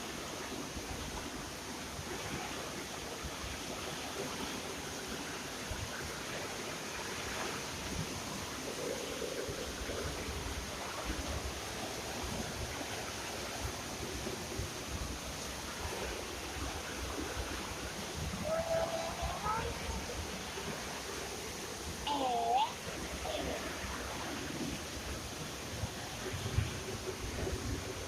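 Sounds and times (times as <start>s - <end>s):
heavy rain pouring: 6.8s - 28.0s.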